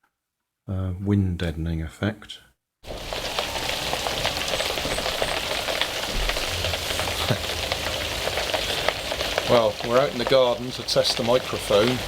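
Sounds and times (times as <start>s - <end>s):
steady rain falling: 2.8s - 12.0s.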